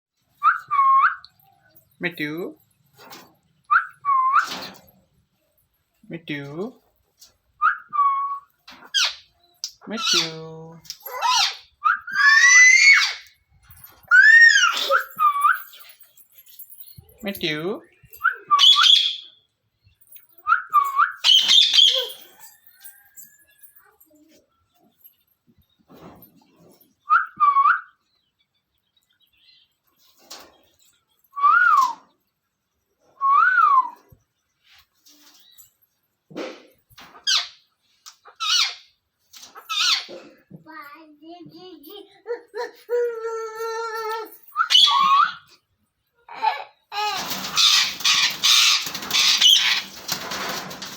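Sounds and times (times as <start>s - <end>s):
parakeet calling: 18.6s - 19.3s, 47.4s - 50.0s.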